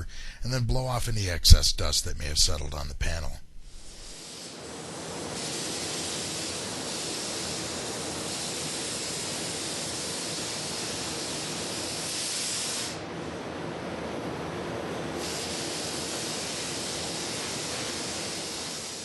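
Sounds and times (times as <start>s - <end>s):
compressed air blow gun hissing: 3.7s - 13.0s, 15.2s - 19.0s.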